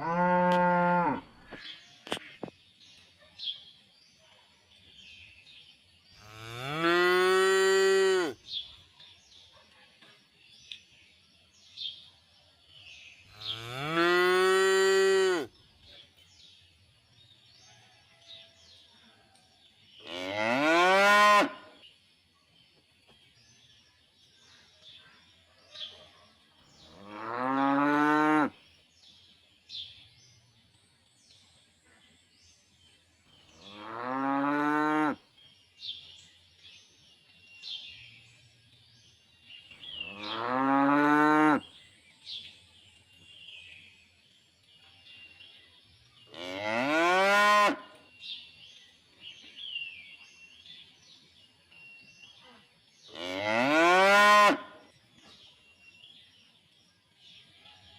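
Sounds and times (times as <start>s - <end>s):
cows mooing: 0.0s - 1.2s.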